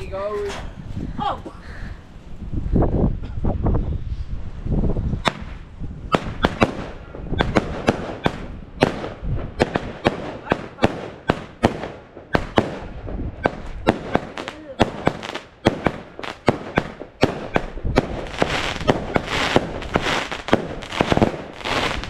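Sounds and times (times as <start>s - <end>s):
fireworks bangs: 5.2s - 22.0s.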